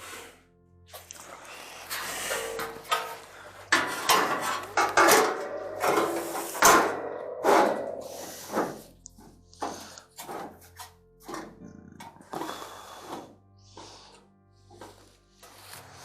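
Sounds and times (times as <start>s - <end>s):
sheet metal clattering and scraping: 1.9s - 9.0s.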